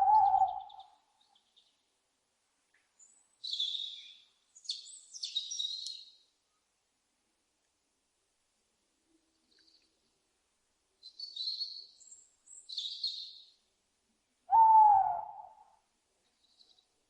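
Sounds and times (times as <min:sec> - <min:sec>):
owl screeching: 0:00.0 - 0:00.8, 0:14.5 - 0:15.7
owl hooting: 0:00.0 - 0:01.0, 0:14.5 - 0:15.8.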